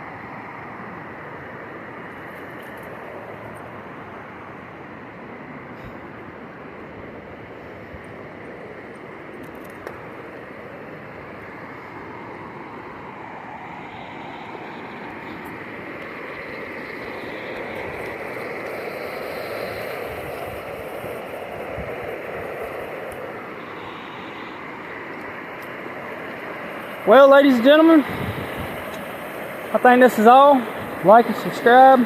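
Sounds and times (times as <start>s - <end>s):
river water rushing: 0.0s - 32.0s.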